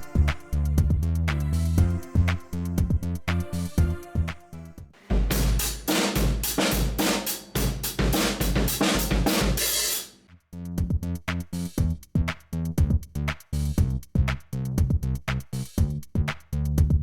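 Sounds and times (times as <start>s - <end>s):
bass drum kicks: 0.0s - 1.2s, 1.8s - 4.0s, 5.1s - 9.6s, 10.8s - 15.2s, 15.8s - 17.0s
crashing cymbals: 5.0s - 10.2s.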